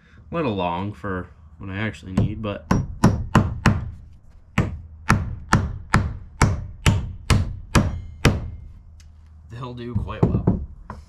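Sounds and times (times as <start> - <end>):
hammer driving nails into plywood: 4.6 - 8.6.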